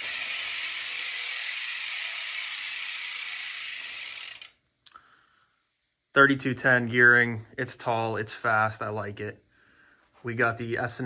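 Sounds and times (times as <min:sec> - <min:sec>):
bicycle hub freewheel buzzing: 0:00.0 - 0:04.6.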